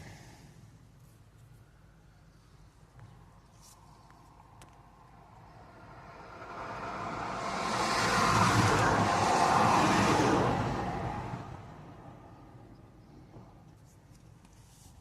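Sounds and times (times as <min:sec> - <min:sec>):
vehicle passing by: 0:05.2 - 0:12.6.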